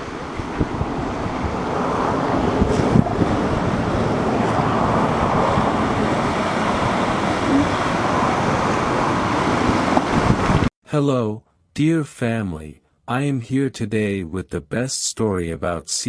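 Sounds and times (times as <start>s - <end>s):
ocean surf: 0.0s - 10.7s
wind buffeting microphone: 0.0s - 10.7s.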